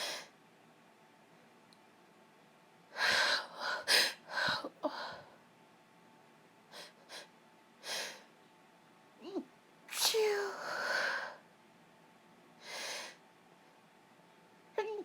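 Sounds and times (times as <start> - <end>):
woman sneezing: 9.9 - 10.6.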